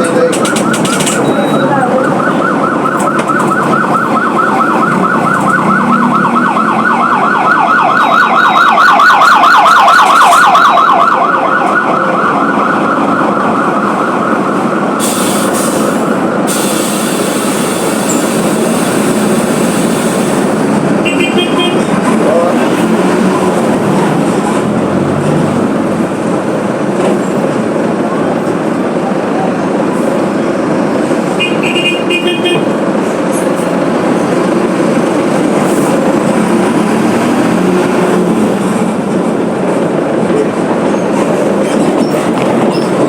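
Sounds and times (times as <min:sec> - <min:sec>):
bus diesel engine running: 0:00.0 - 0:08.0, 0:10.7 - 0:43.0
siren wailing: 0:00.0 - 0:15.2.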